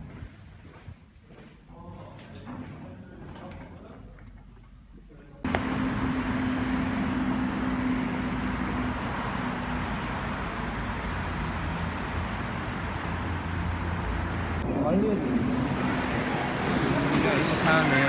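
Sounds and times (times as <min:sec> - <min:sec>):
low engine hum: 0:05.5 - 0:17.4
vehicles passing: 0:05.5 - 0:18.0.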